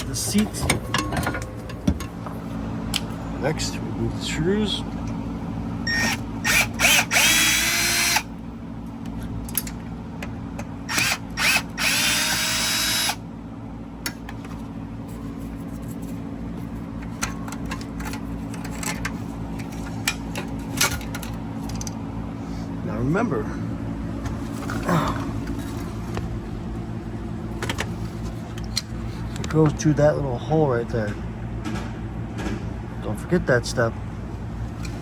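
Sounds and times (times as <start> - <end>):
steady low hum: 0.0 - 35.0
drill-driver motor whine: 5.9 - 8.3, 10.9 - 13.2.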